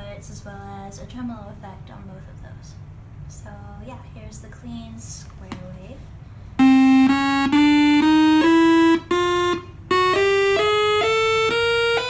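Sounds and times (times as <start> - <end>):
buzzy synthesizer rising scale: 6.6 - 12.0.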